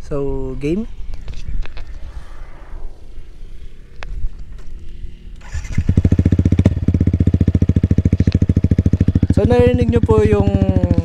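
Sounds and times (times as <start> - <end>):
motorcycle engine starting and idling: 4.3 - 11.0.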